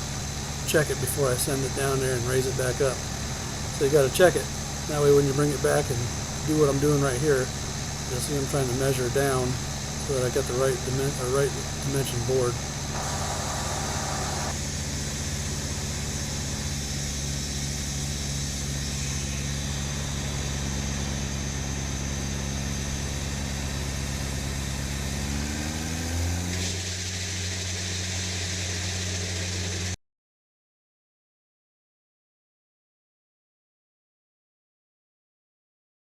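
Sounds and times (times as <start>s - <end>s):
sawmill engine running: 0.0s - 30.0s.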